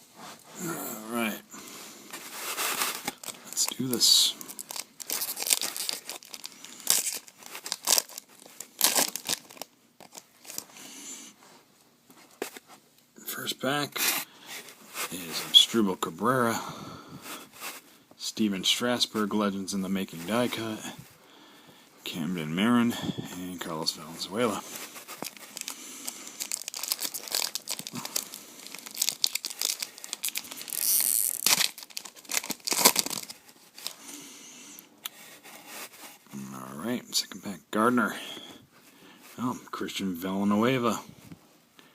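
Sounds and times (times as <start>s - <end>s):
foil wrapper tearing and crinkling: 2.6s - 10.6s, 24.8s - 34.0s.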